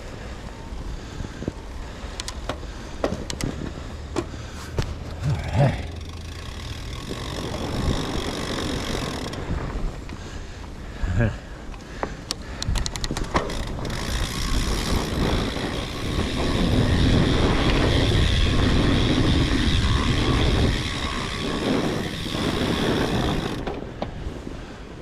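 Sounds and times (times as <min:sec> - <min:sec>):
bike tyres rolling on trail: 0:00.0 - 0:25.0
wind on microphone: 0:04.7 - 0:11.0, 0:12.6 - 0:25.0.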